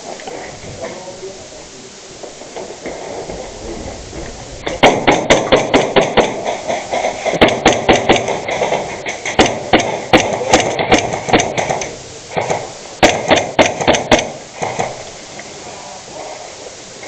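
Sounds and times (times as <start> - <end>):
airsoft gun rapid shots: 4.7 - 15.0.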